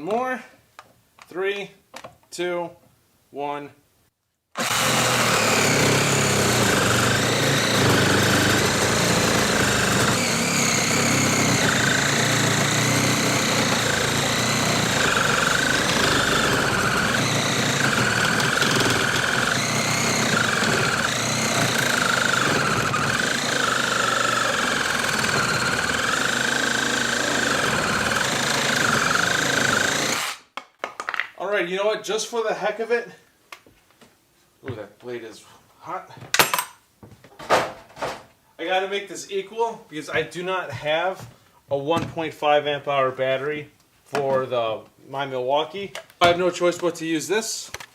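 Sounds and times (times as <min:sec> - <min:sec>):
reciprocating saw cutting: 0:04.6 - 0:30.5.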